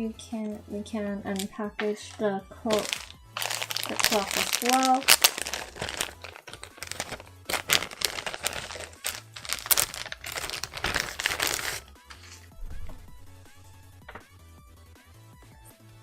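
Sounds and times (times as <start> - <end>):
plastic packaging crinkling: 1.3 - 12.4.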